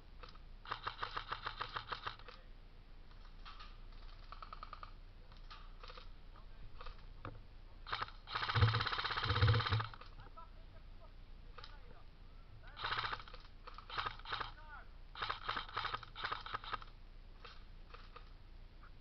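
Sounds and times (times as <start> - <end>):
airsoft guns firing: 7.9 - 10.0, 12.8 - 14.6, 15.2 - 18.1.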